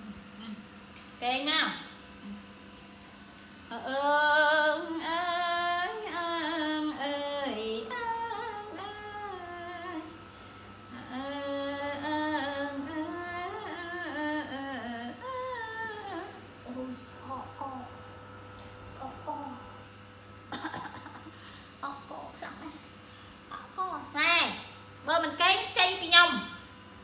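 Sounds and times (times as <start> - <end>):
woman singing slow melody: 3.7 - 10.2, 10.9 - 18.0.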